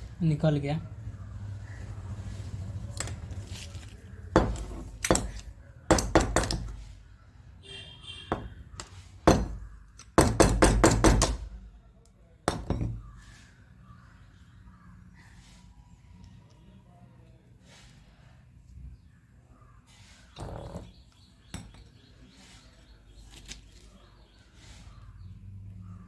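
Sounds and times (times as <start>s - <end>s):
knocks and metallic clinks: 4.3s - 7.0s, 20.4s - 22.0s.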